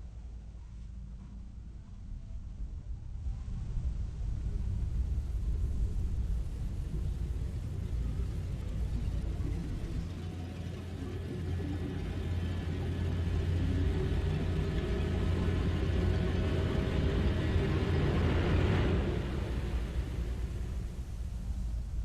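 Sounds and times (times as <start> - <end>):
deep rumbling drone: 0.0 - 22.0
hissing swell: 6.5 - 22.0.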